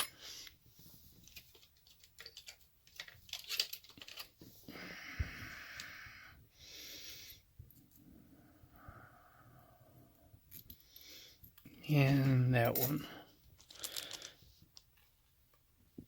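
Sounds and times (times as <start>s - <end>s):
soft hissing noise: 0.0s - 1.5s
tiny lock parts clicking: 1.5s - 4.4s.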